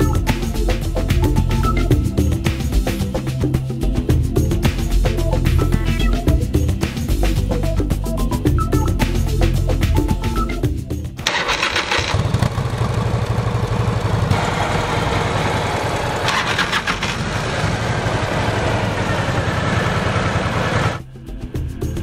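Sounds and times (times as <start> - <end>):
motorcycle engine starting: 11.2 - 21.0
motorcycle engine running: 11.2 - 22.0.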